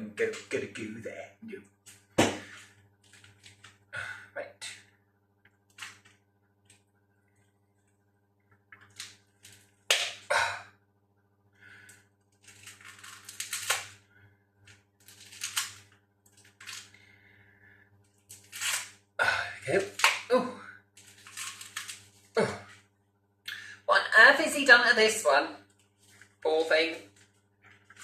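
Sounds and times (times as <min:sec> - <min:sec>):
packaging crinkling and rustling: 0:08.8 - 0:09.8, 0:12.3 - 0:14.0, 0:14.7 - 0:17.0, 0:21.0 - 0:22.3, 0:27.0 - 0:28.0.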